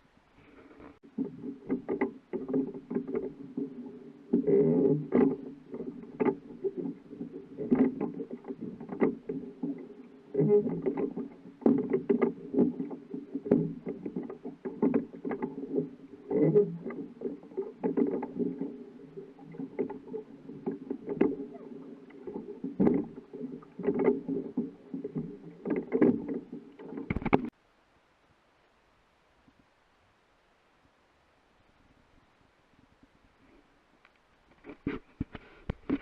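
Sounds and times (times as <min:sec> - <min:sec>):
boat engine rumble: 0:00.0 - 0:27.6
water slapping and knocking: 0:01.0 - 0:27.5.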